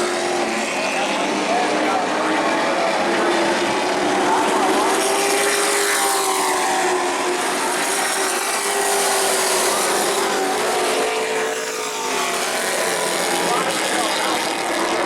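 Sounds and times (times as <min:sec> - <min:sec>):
race truck engines at speed: 0:00.0 - 0:15.0.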